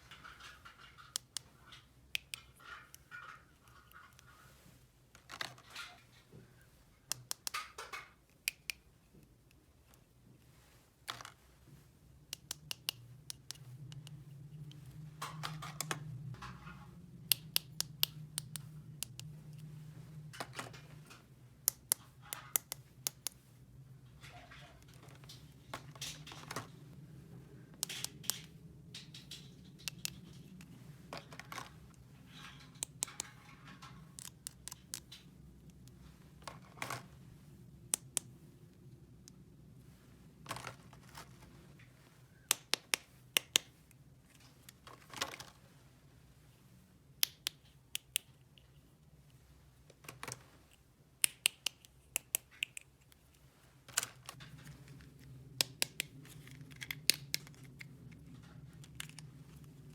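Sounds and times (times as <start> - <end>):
low steady hum: 0.0 - 59.9
plastic toy pieces clicking: 7.1 - 8.9, 21.6 - 23.4, 27.8 - 30.7, 32.4 - 35.2, 42.5 - 43.7, 51.2 - 53.3, 55.5 - 59.3.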